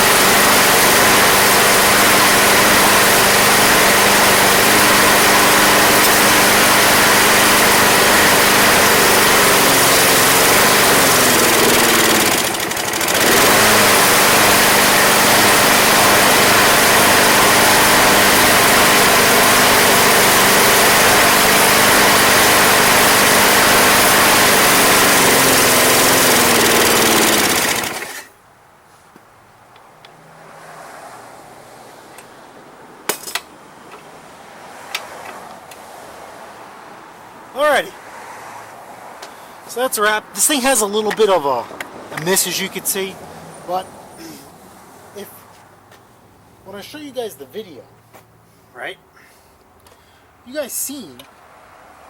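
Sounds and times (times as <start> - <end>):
lawn mower engine running: 0.0 - 28.4.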